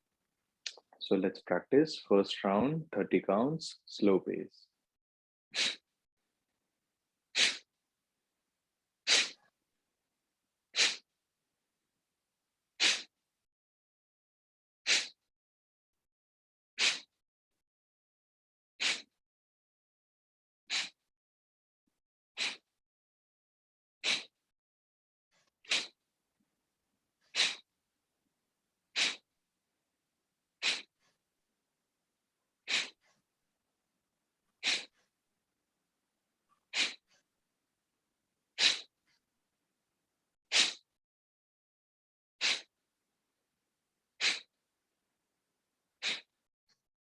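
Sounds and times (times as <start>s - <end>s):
forceful nasal exhalations: 5.6s - 5.8s, 7.4s - 7.7s, 9.1s - 9.4s, 10.8s - 11.0s, 12.8s - 13.1s, 18.8s - 19.1s, 20.7s - 21.0s, 22.4s - 22.6s, 24.0s - 24.3s, 25.7s - 26.0s, 27.3s - 27.6s, 29.0s - 29.2s, 30.6s - 31.1s, 32.6s - 33.2s, 34.6s - 35.1s, 36.7s - 37.2s, 38.6s - 38.9s, 40.5s - 40.8s, 42.4s - 42.7s, 44.2s - 44.5s, 46.0s - 46.3s.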